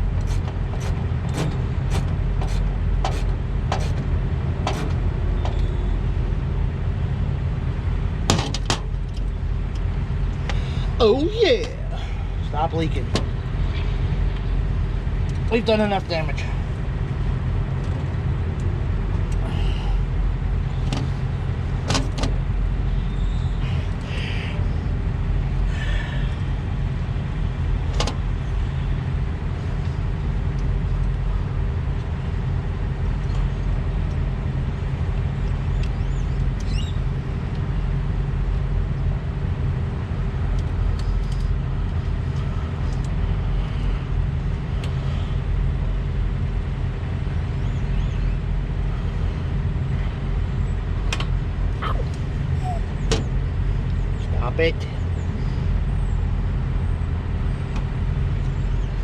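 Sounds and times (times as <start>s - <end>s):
diesel truck engine idling: 0.0s - 59.0s
tools clicking and clinking: 0.2s - 4.1s, 4.7s - 5.0s.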